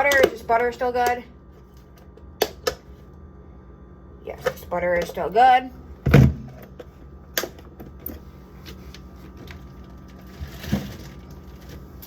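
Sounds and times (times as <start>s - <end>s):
rustling of food packaging: 8.8s - 12.0s.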